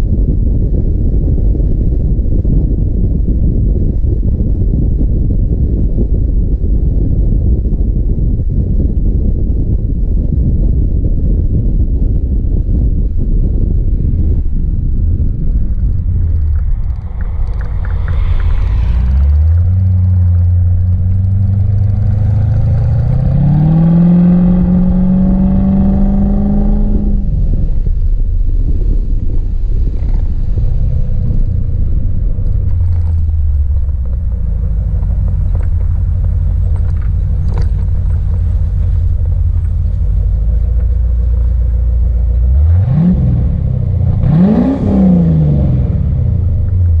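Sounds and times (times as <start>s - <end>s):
engine throttle blips: 12.6s - 47.0s
car engine revving and idling: 12.7s - 47.0s.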